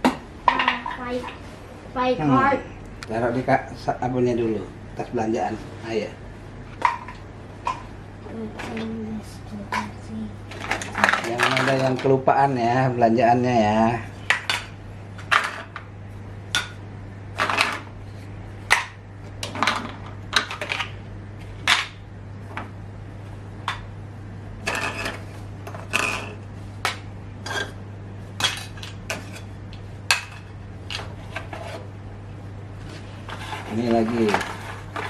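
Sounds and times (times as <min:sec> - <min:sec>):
plastic toys clacking: 0:10.5 - 0:12.2.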